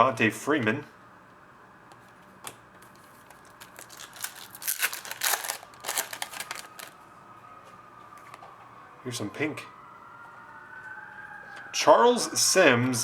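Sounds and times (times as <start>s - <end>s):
foil wrapper tearing and crinkling: 3.0s - 7.0s.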